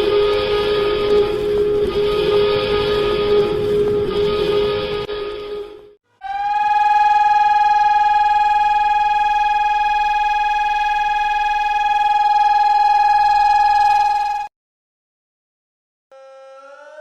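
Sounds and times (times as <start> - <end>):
electronic alarm tone: 6.2 - 14.5.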